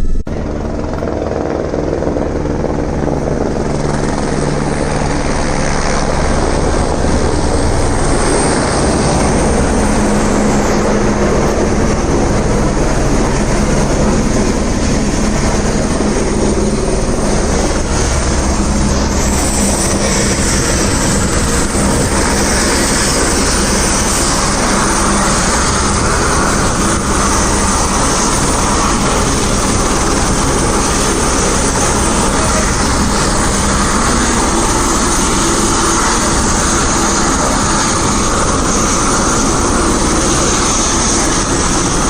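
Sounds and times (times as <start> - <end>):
helicopter drone: 0.0 - 42.0.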